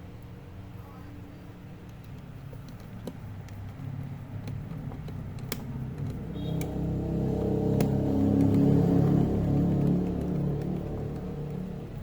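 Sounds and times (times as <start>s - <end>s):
low steady rumble: 0.0s - 12.0s
light clicks and taps of hardware: 1.8s - 6.8s.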